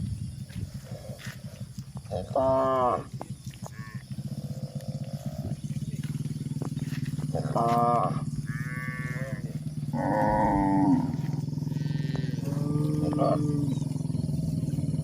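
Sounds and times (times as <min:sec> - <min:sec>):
steady low drone: 0:04.2 - 0:15.0
cattle mooing: 0:06.8 - 0:14.0.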